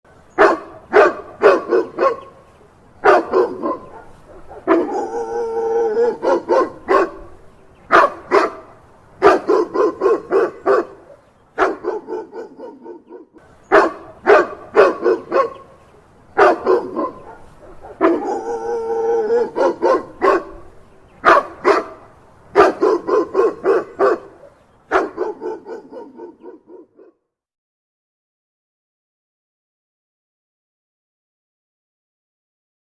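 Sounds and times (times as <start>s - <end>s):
dog barking: 0.4s - 2.4s, 3.0s - 15.7s, 16.4s - 27.2s.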